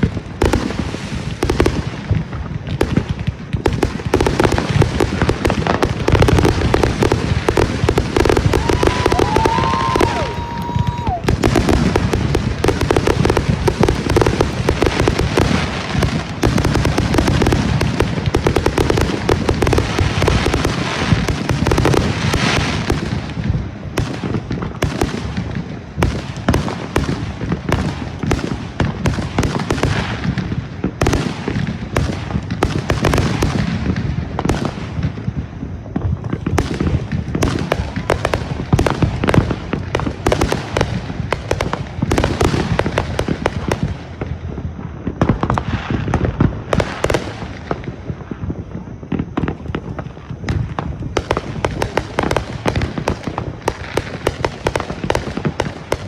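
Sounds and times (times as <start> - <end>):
fireworks booms and crackling: 0.0 - 56.0.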